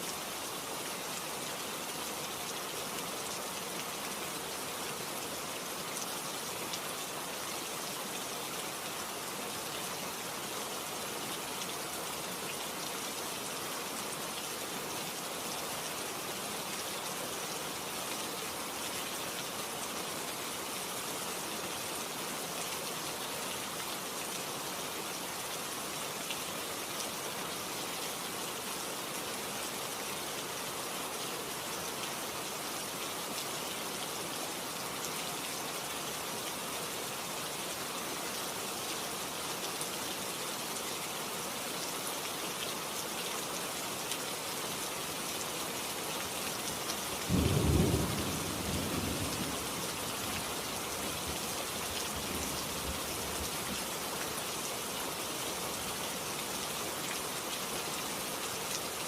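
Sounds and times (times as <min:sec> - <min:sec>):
heavy rain hissing: 0:45.0 - 0:56.2.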